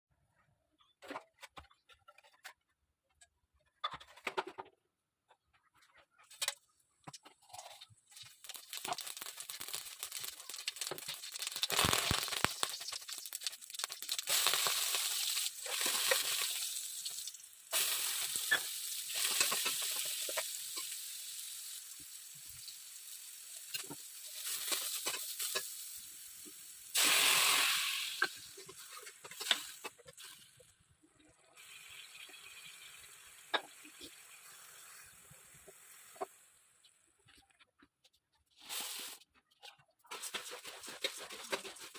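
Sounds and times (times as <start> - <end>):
puffed rice stirred in a bowl: 8.2 - 16.6, 40.0 - 41.9.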